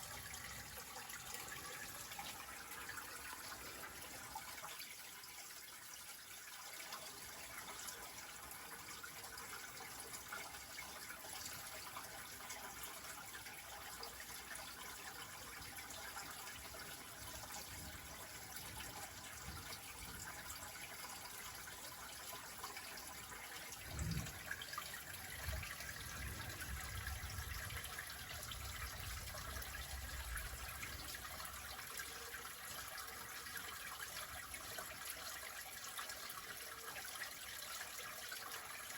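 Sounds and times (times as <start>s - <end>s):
water trickling and splashing: 0.0s - 38.9s
low thump: 23.9s - 24.5s.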